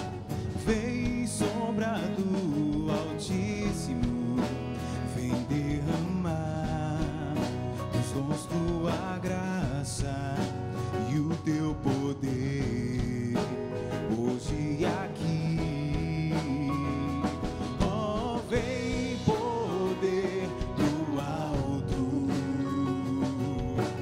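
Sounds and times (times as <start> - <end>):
drums: 0.0 - 24.0
guitar: 0.0 - 24.0
man singing: 0.0 - 24.0.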